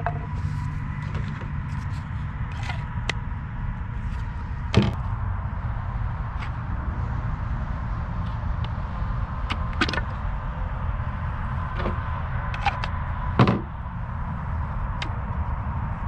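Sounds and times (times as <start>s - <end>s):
low rumble: 0.0s - 16.0s
firewood knocking and clattering: 4.7s - 5.0s, 13.4s - 13.7s
heavy thump: 4.7s - 5.0s, 13.4s - 13.8s.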